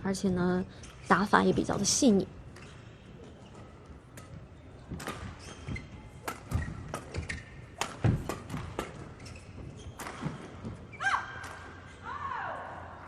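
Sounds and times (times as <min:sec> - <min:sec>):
shoe squeaks on court floor: 0:05.1 - 0:11.1.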